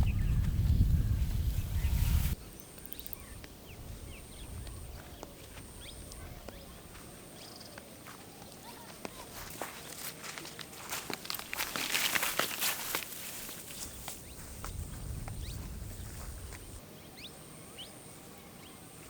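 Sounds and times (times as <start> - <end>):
loud low rumble: 0.0 - 2.4
bird chirps: 0.0 - 6.8.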